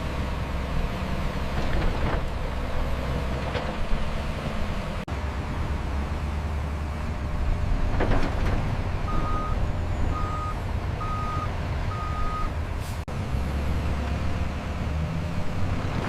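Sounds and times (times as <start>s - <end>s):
heavy vehicle engine rumble: 0.0s - 16.0s
reversing alarm beeping: 9.1s - 12.5s.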